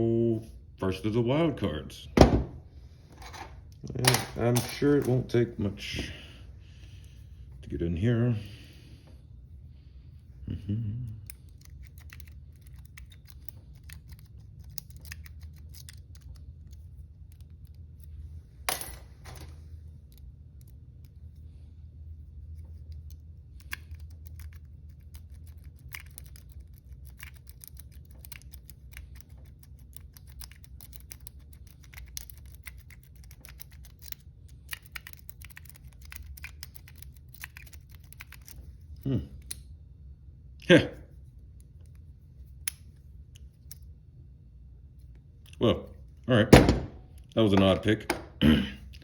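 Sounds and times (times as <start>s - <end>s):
low steady hum: 0.0s - 49.0s
lock picks clicking in padlock: 11.5s - 16.4s, 23.6s - 38.6s.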